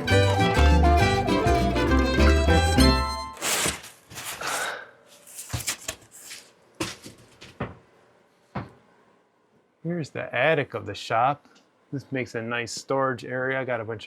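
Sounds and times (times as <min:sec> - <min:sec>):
background music: 0:00.0 - 0:03.4
rustling: 0:03.3 - 0:07.6
knocks and thumps: 0:06.8 - 0:07.9, 0:08.6 - 0:08.8.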